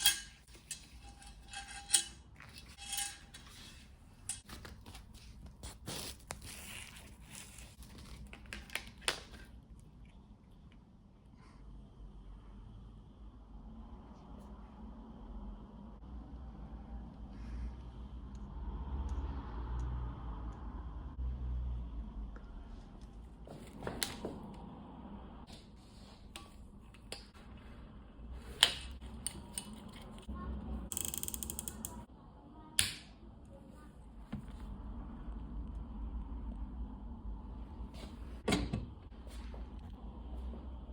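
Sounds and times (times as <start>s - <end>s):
packaging crinkling and rustling: 4.4s - 9.6s
rapid ratchet-like clicking: 30.9s - 32.1s.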